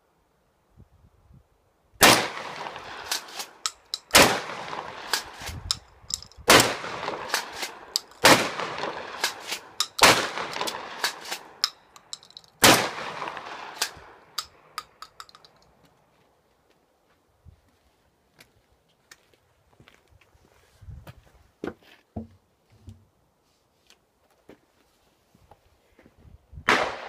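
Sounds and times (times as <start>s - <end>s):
shotgun shots with echo: 2.0s - 3.5s, 4.1s - 5.4s, 6.5s - 11.5s, 12.6s - 14.0s, 26.7s - 27.0s.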